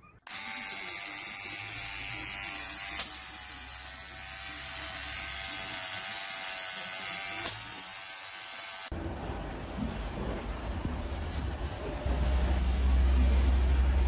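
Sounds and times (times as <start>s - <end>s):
small motor buzzing: 0.3s - 8.9s.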